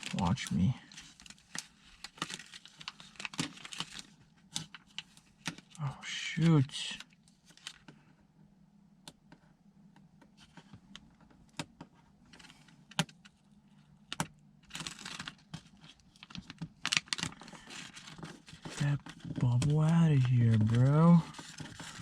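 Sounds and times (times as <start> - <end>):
sticker backing rustling: 14.7 - 22.0.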